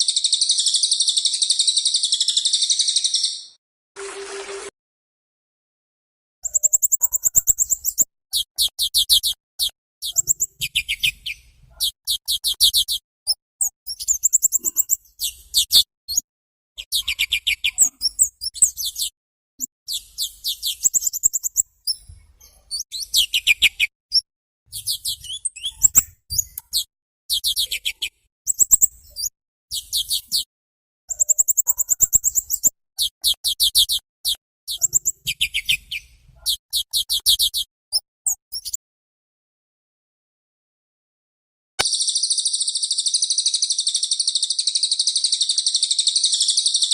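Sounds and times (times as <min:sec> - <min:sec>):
songbird trilling: 0:06.4 - 0:16.2, 0:34.7 - 0:37.7.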